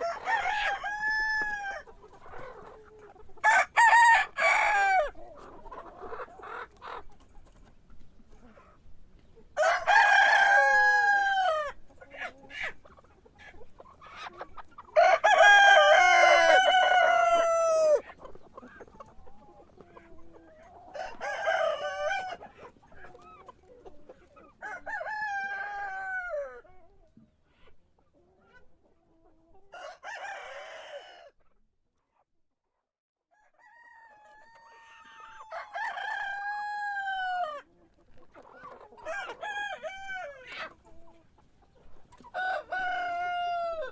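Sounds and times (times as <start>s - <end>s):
rooster crowing: 0.0s - 1.9s, 3.4s - 5.1s, 9.6s - 11.8s, 15.0s - 18.0s, 29.8s - 31.3s, 33.4s - 37.6s, 42.3s - 43.9s.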